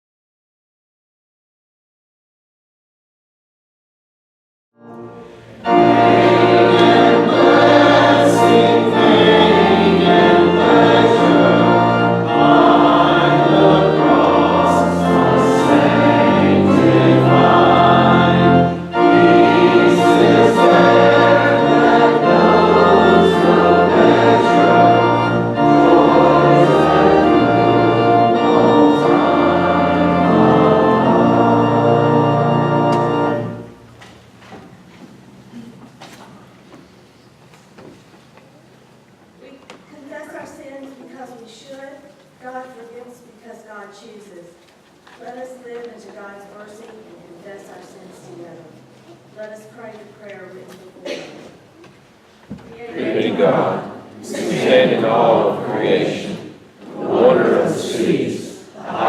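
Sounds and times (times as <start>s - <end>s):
church choir singing: 4.8s - 33.9s, 52.8s - 59.0s
organ chords: 4.8s - 34.3s, 53.0s - 59.0s.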